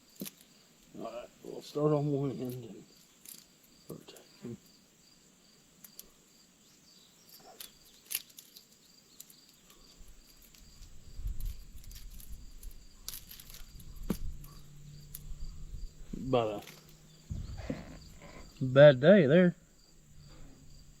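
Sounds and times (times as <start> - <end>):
insects trilling: 0.0 - 21.0.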